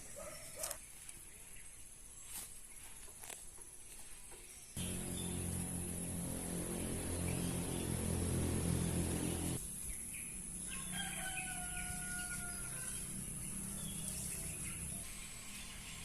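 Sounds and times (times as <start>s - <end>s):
low droning: 4.8s - 9.6s
rooster crowing: 10.7s - 13.1s.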